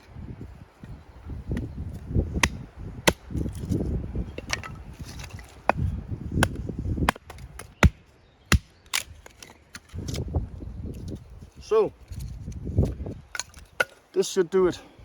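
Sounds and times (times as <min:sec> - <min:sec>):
wood being handled: 0:00.8 - 0:08.0
axe chopping wood: 0:02.3 - 0:03.6, 0:04.4 - 0:09.9.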